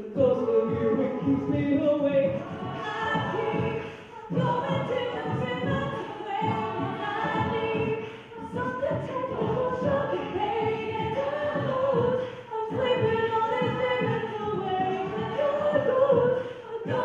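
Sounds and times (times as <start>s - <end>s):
a cappella group singing: 0.0s - 17.0s.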